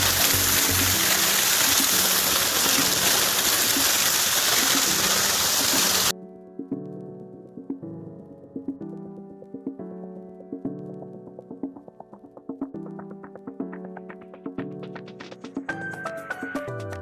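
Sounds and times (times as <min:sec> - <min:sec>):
waterfall rushing: 0:00.0 - 0:06.1
background music with plucked notes: 0:05.7 - 0:17.0.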